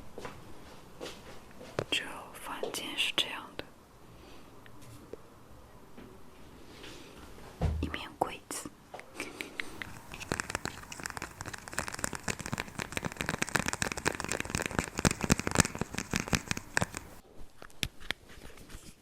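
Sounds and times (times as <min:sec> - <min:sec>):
crinkling and crackling: 0:09.6 - 0:19.0.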